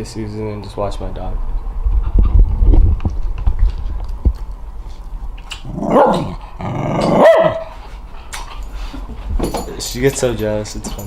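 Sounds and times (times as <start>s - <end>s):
dog vocalizing: 5.5s - 7.7s.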